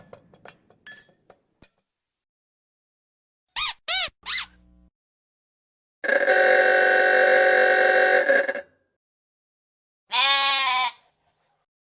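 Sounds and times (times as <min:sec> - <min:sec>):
lamb bleating: 0:10.1 - 0:11.1.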